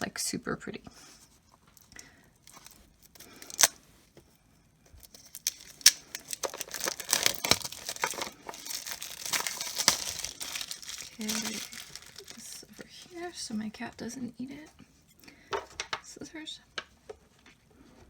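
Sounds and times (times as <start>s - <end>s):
packaging rustling and tearing: 2.4s - 3.9s, 5.0s - 13.4s.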